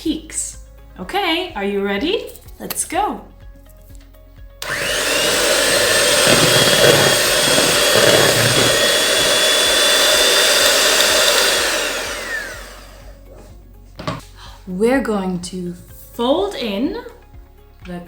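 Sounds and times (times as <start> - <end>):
electric hand mixer whining: 4.6 - 13.2.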